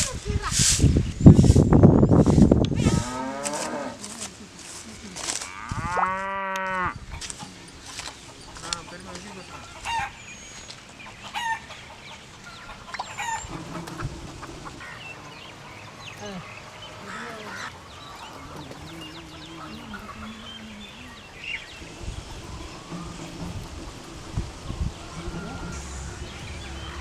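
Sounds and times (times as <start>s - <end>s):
birds chirping: 0.0s - 27.0s
hens clucking: 0.0s - 27.0s
cow mooing: 2.8s - 4.1s, 5.5s - 7.0s, 16.2s - 27.0s.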